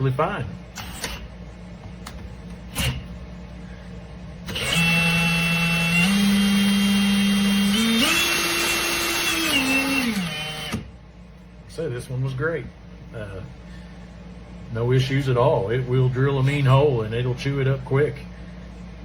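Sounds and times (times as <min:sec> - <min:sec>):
power drill whining: 0:04.5 - 0:10.9.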